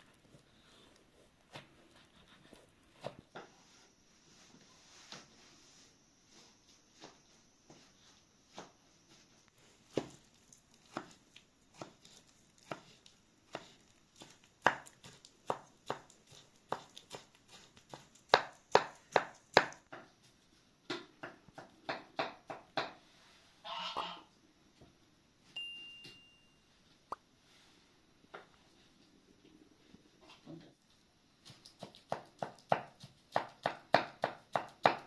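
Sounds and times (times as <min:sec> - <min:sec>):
knife chopping on cutting board: 0:10.9 - 0:20.0, 0:31.5 - 0:35.0.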